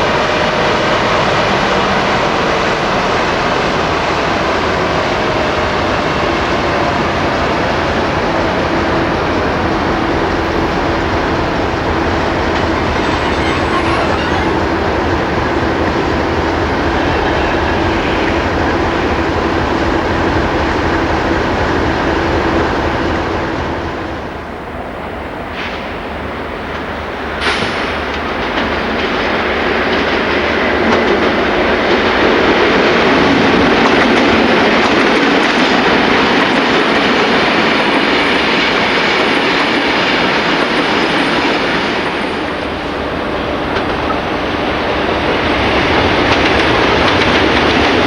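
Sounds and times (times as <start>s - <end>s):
freight train rumbling on rails: 0.0s - 48.0s.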